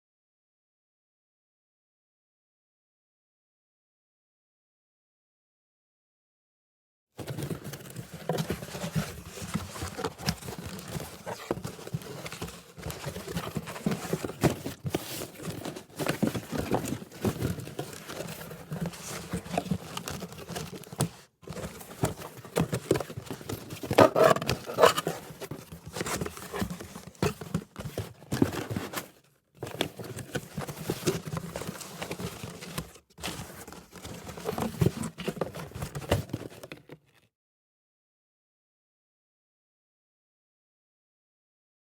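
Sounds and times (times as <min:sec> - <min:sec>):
cardboard box flaps rustling: 0:07.2 - 0:36.7.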